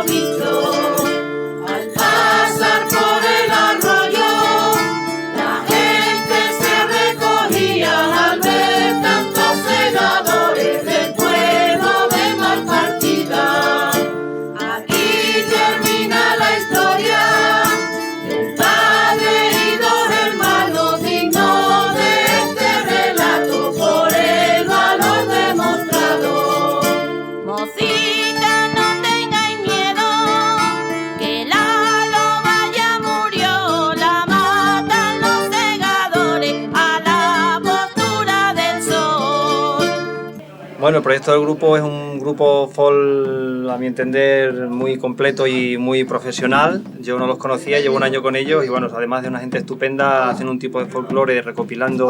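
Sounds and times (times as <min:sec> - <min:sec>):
mixed choir singing folk song: 0:00.0 - 0:30.8, 0:31.5 - 0:42.3
guitars strumming: 0:00.0 - 0:40.8.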